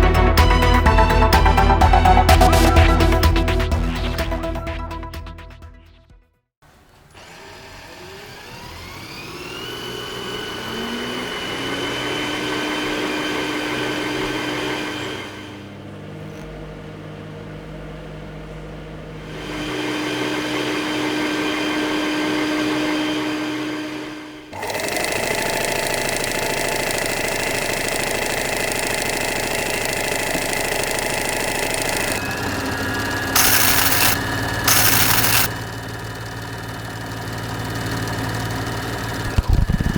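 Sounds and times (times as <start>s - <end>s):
electric motor whirring whine: 7.1s - 16.4s, 19.3s - 39.9s
mechanical drone: 29.8s - 39.9s.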